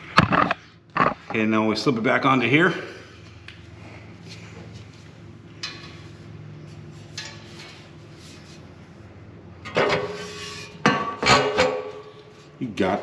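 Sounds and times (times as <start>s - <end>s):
low steady hum: 0.0s - 13.0s
metal clatter: 5.6s - 8.0s, 9.6s - 12.2s
metal knocks and scrapes: 5.6s - 8.6s, 9.6s - 12.5s.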